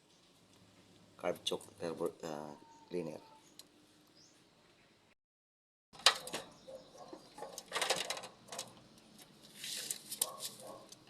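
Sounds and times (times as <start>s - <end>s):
metal clinks and knocks: 6.0s - 8.8s.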